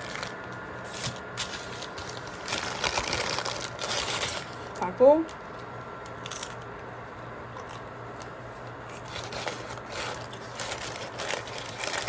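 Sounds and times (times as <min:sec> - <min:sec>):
paper wrapper rustling and crinkling: 0:00.0 - 0:04.8, 0:07.5 - 0:12.0
low steady hum: 0:00.0 - 0:12.0.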